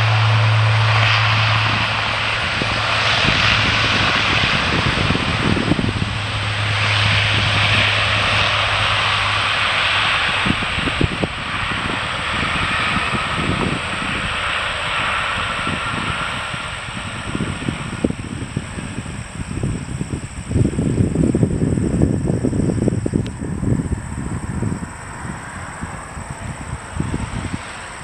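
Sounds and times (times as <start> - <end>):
turboprop engines roaring: 0.0 - 28.0.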